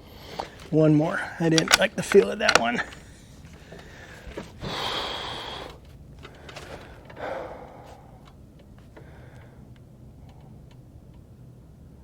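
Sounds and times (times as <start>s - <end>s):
rifle bolt rasping: 1.4s - 4.0s
light metallic clicks: 1.4s - 4.5s.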